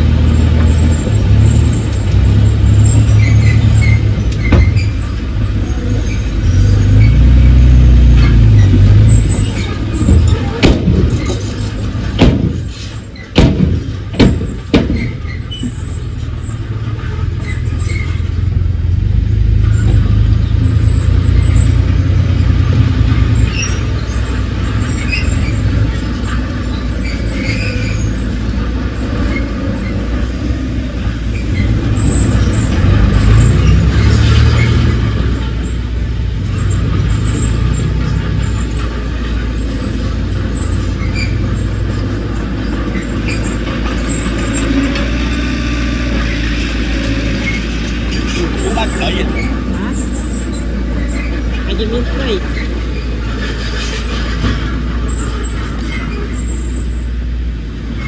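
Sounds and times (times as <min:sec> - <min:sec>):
diesel engine under load: 0:00.0 - 0:58.0
small clanks and squeaks: 0:00.2 - 0:58.0
sharp metallic knocks: 0:00.5 - 0:05.4, 0:08.0 - 0:18.3.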